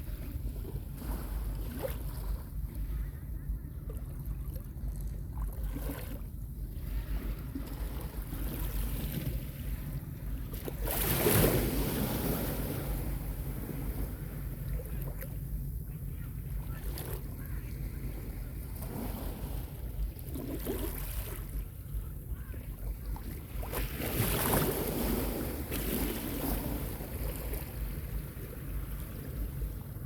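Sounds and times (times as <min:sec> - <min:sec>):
wind rumble on microphone: 0:00.0 - 0:30.0
small waves washing on beach: 0:06.8 - 0:30.0.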